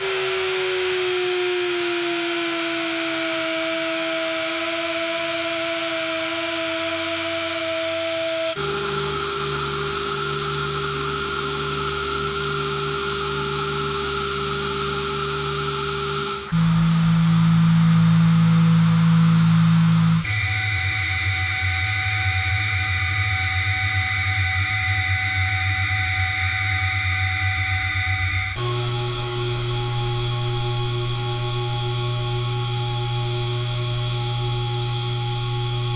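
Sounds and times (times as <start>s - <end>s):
thin steady whine: 16.2s - 20.3s, 28.6s - 35.9s.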